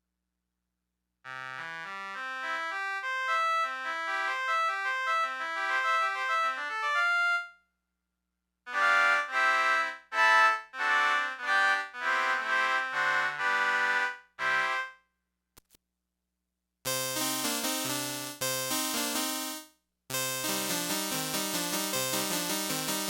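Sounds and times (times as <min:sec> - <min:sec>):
keyboard playing chords: 0:01.3 - 0:07.5, 0:08.7 - 0:14.9, 0:16.9 - 0:23.0
keyboard playing single notes: 0:16.9 - 0:23.0.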